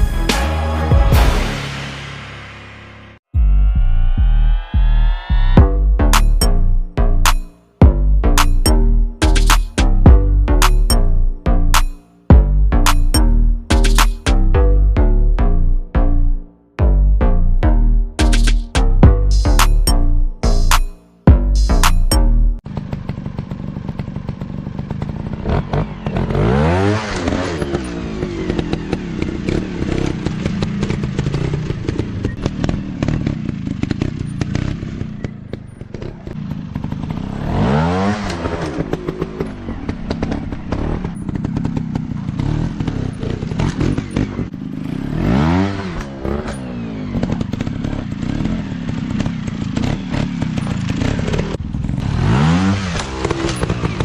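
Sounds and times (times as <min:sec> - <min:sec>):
dirt bike engine revving: 0:18.2 - 0:54.0.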